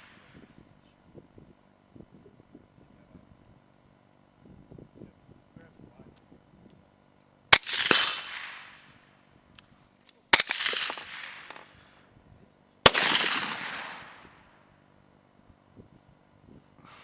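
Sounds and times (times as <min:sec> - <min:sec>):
echoing rifle shots: 0:07.5 - 0:09.0, 0:10.3 - 0:11.8, 0:12.9 - 0:14.5.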